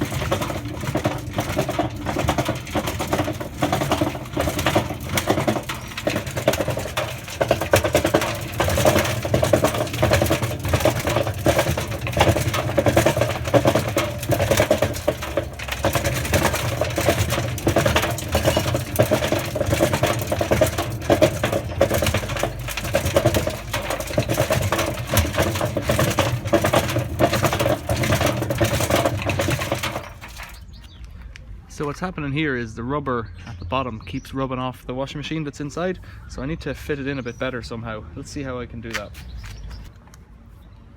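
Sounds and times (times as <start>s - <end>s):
washing machine hum: 0.0s - 30.6s
toy clattering in washing drum: 0.0s - 30.8s.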